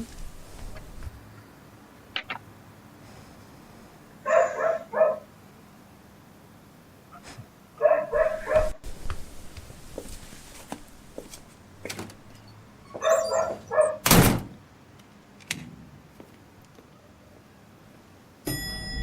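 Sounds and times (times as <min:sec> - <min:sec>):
dog barking: 0:04.2 - 0:05.3, 0:07.8 - 0:08.8, 0:12.9 - 0:14.0.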